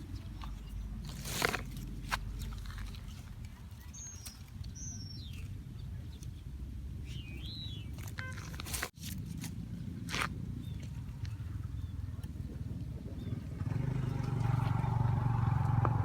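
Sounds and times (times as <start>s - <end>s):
bird chirps: 3.0s - 6.4s, 7.0s - 8.8s.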